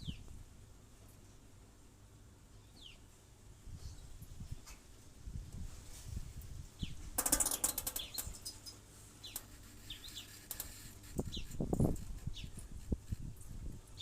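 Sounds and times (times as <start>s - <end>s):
birds chirping: 6.8s - 12.9s
rapid fluttering rattle: 7.2s - 14.0s.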